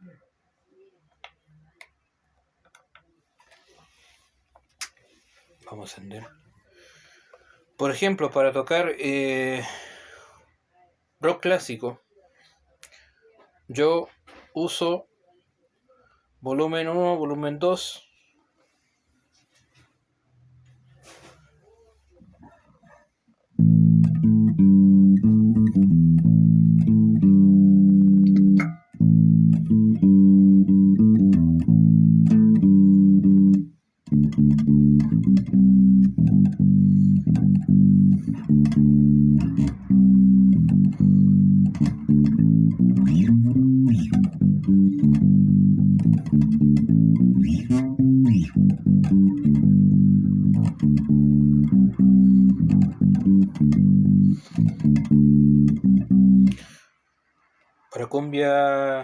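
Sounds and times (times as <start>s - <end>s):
electric bass riff: 23.6s - 56.7s.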